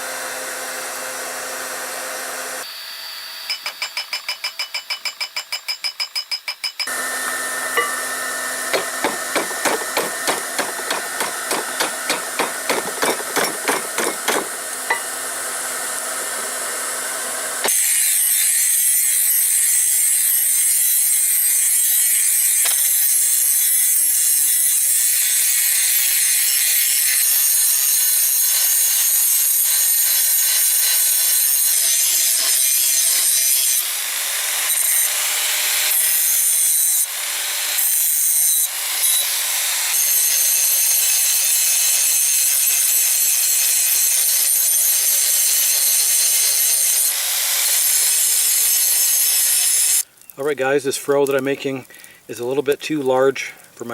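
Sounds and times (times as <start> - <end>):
hammer striking steel on anvil: 3.5 - 15.2.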